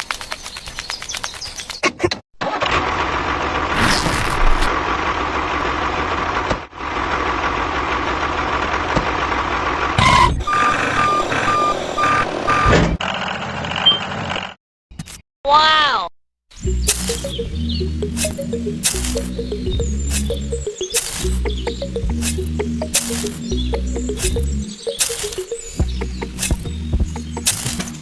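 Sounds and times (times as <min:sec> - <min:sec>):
reversing alarm beeps: 0:10.0 - 0:12.8
truck engine running: 0:16.6 - 0:28.0.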